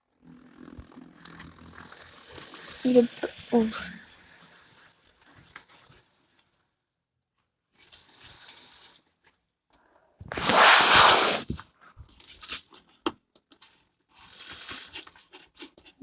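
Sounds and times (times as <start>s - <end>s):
model train running: 0.3s - 4.5s.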